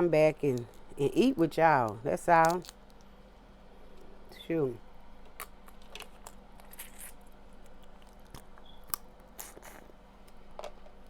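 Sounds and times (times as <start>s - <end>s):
crab legs being chewed: 5.2s - 10.5s.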